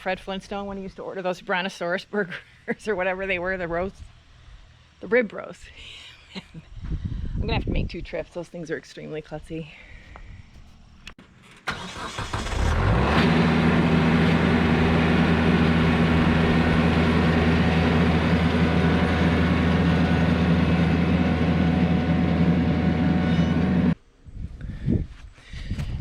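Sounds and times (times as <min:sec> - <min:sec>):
vehicle engine running: 0:12.2 - 0:24.0.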